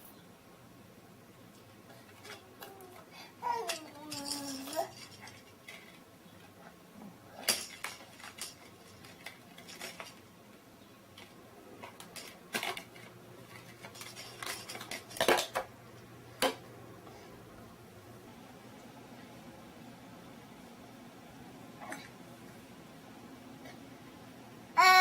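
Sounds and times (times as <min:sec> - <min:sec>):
hard objects clinking together: 0:03.6 - 0:06.0, 0:11.8 - 0:15.7.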